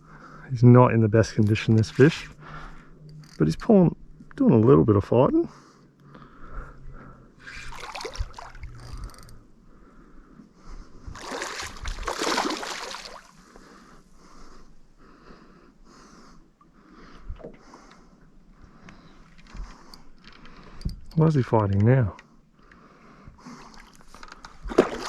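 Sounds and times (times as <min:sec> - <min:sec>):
fish splashing in water: 0:07.6 - 0:08.7, 0:11.2 - 0:13.3, 0:24.6 - 0:25.0.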